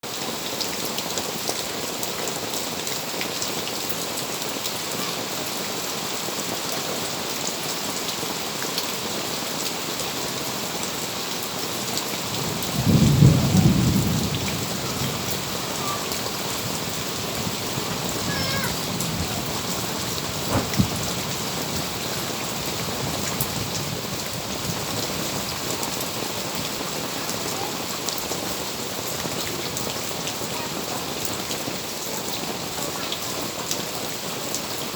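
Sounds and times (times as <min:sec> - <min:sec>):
heavy rain falling: 0:00.0 - 0:34.9
thunder rumble: 0:12.2 - 0:25.9.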